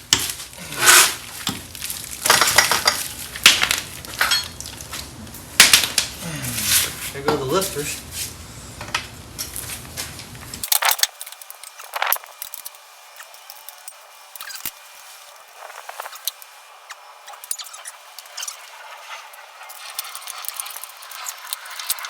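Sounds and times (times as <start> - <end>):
metal tools clinking: 2.3 - 3.2, 4.1 - 4.9.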